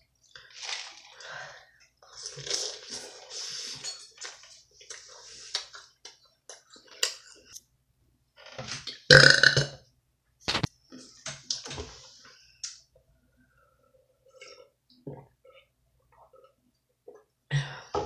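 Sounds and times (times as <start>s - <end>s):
woman burping: 9.1s - 9.7s.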